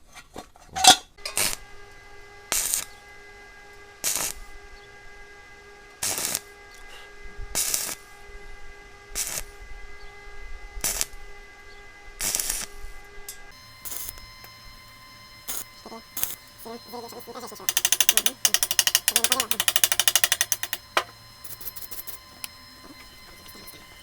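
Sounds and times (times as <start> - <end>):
arc welding crackling hiss: 13.5 - 24.0
steady whine: 13.5 - 24.0.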